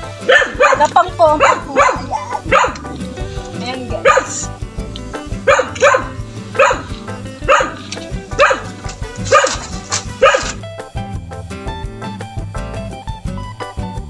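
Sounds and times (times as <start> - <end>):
music with steady beat: 0.0 - 14.0
dog barking: 0.2 - 3.0, 4.0 - 4.6, 5.4 - 10.6.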